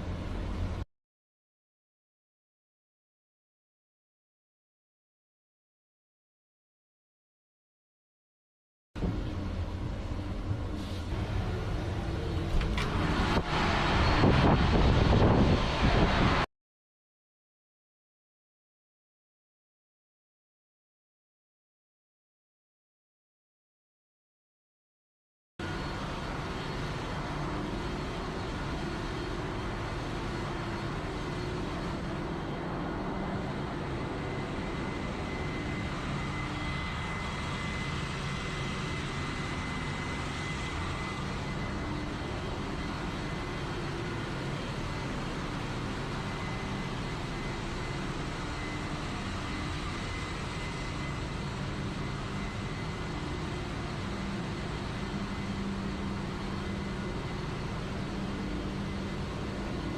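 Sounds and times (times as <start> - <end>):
engine room machinery hum: 0.0 - 0.9, 9.0 - 16.5, 25.6 - 59.9
faint high whine: 25.6 - 59.9.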